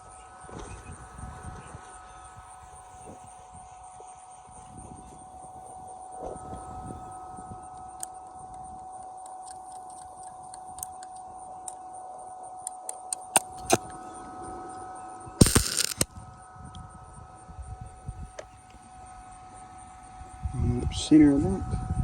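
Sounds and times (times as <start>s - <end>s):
steady high whine: 0.0s - 22.0s
loud burst of noise: 15.4s - 16.2s.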